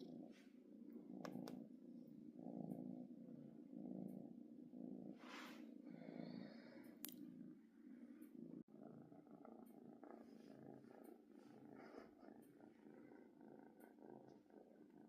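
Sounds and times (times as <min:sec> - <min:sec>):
cat purring: 0:00.0 - 0:15.0.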